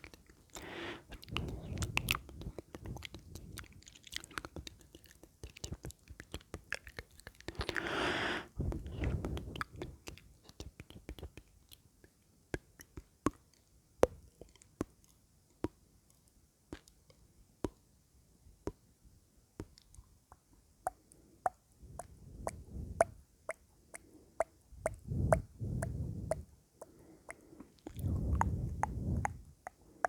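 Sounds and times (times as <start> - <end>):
wet lip and tongue clicks: 0.0 - 17.2, 19.6 - 30.0.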